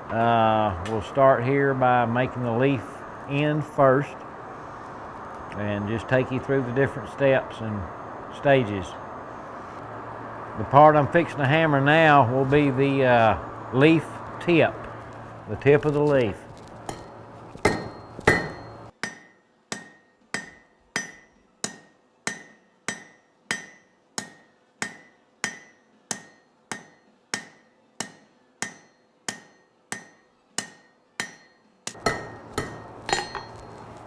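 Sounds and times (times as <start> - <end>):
hammer striking metal on anvil: 16.9 - 33.8.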